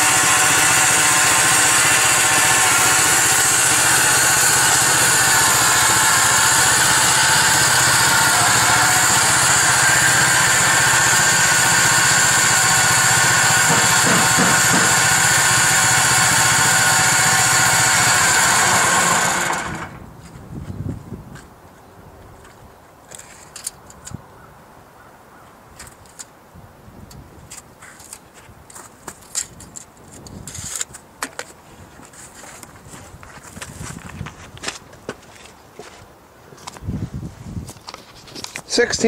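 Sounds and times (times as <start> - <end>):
bandsaw mill cutting log: 0.0 - 20.0.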